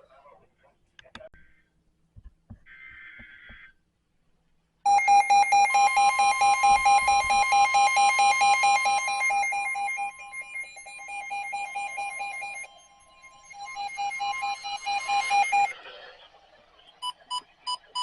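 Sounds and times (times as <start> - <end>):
radio alarm beeping rapidly: 4.9 - 15.7
steady long warning tone: 4.9 - 15.8.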